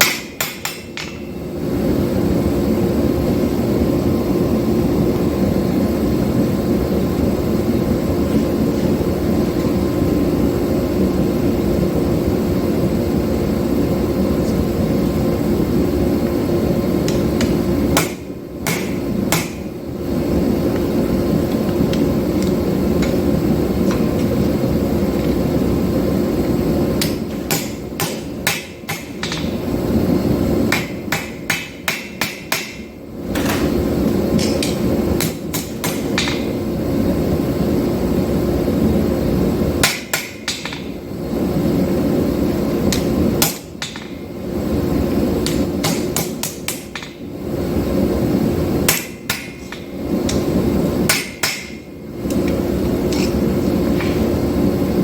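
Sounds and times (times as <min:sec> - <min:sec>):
hammer strikes on steel: 0:00.0 - 0:01.3, 0:17.1 - 0:19.7, 0:27.0 - 0:29.6, 0:30.7 - 0:33.6, 0:34.4 - 0:36.5, 0:39.8 - 0:40.9, 0:42.9 - 0:44.2, 0:45.4 - 0:47.2, 0:48.9 - 0:49.9, 0:51.1 - 0:51.9.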